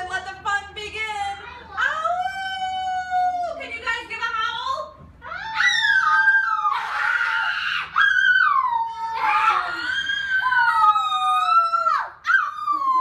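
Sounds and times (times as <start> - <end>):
children howling: 5.2 - 13.0.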